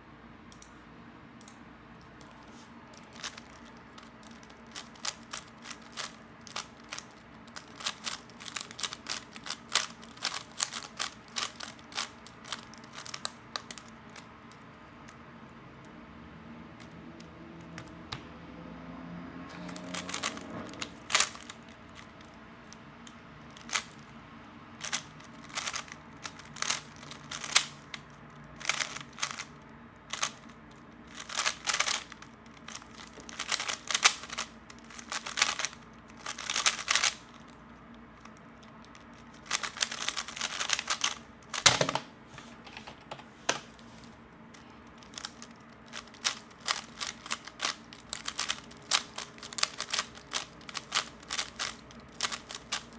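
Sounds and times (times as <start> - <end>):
puzzle cube plastic clicking: 1.4 - 15.2, 19.6 - 22.4, 23.0 - 24.1, 24.8 - 29.5, 30.1 - 37.5, 38.2 - 42.0, 45.0 - 52.9.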